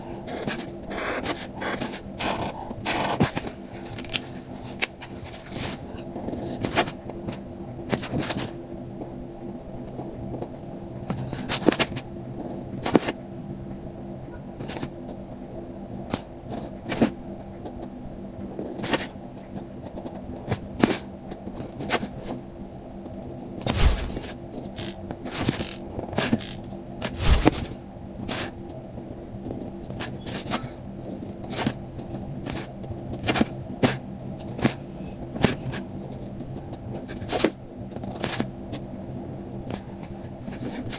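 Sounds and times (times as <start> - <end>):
heavy thuds: 23.7 - 24.3, 27.1 - 27.7
low hum: 23.7 - 25.0, 26.4 - 27.8.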